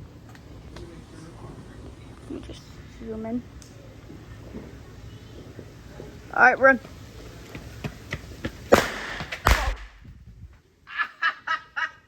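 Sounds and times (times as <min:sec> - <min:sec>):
firework crackles: 0:00.0 - 0:10.3
loud firework bangs: 0:06.9 - 0:10.2.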